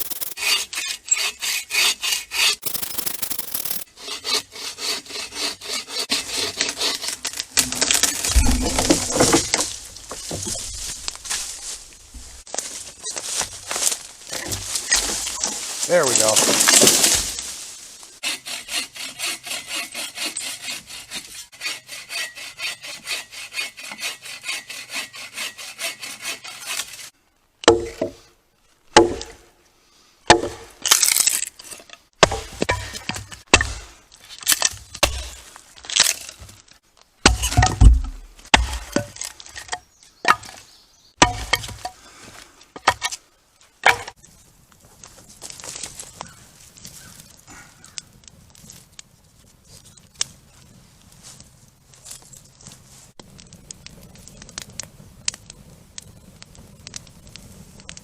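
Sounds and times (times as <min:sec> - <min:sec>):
wood being sawn by hand: 0:04.0 - 0:07.2, 0:18.2 - 0:27.0
wood cracking and knocking: 0:07.2 - 0:17.6, 0:34.4 - 0:40.6, 0:41.2 - 0:41.9.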